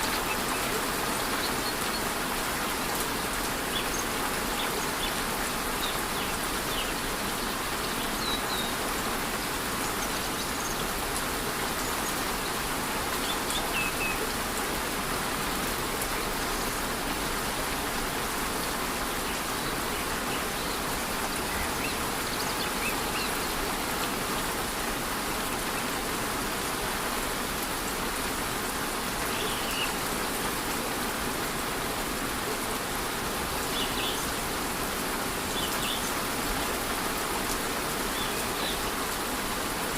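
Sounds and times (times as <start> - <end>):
light rain: 0.0 - 39.9
waterfall rushing: 0.0 - 39.9.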